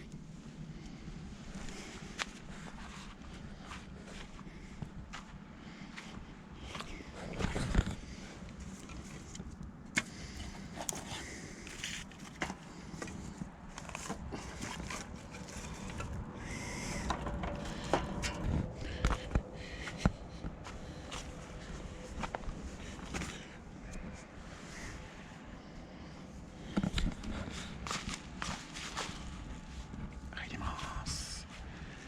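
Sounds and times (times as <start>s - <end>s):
knocks and clicks of handling: 16.9s - 19.5s.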